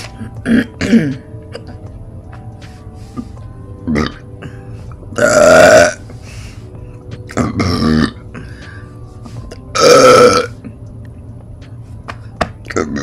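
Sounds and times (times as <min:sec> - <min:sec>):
person burping loudly: 0:00.2 - 0:01.8, 0:03.8 - 0:06.1, 0:07.3 - 0:08.6, 0:09.7 - 0:10.6, 0:12.7 - 0:13.0.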